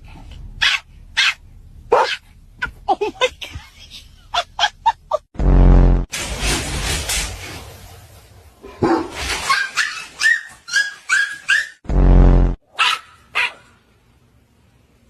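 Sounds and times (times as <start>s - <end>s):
small dog yapping: 0.6s - 2.2s, 8.8s - 11.8s, 12.8s - 13.7s.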